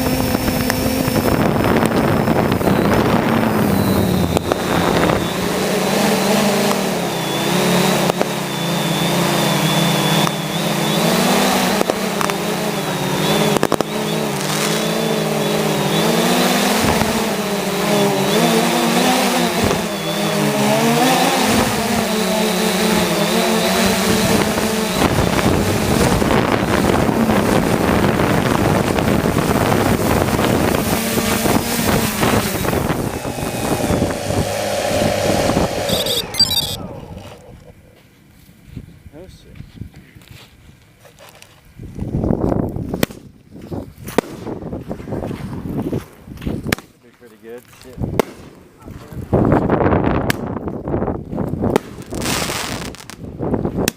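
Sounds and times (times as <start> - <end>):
drone propellers whirring: 0.0 - 38.5.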